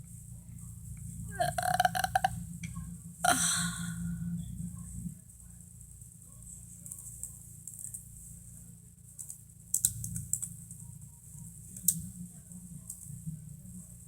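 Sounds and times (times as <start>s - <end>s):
laptop keyboard typing: 9.2s - 10.8s.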